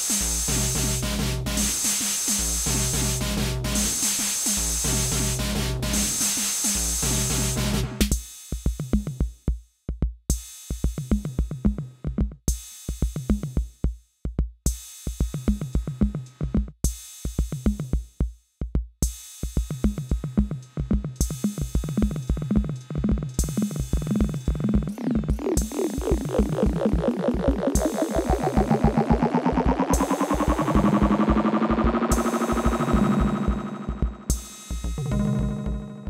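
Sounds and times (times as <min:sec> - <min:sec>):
drum machine beat: 0:00.0 - 0:36.0.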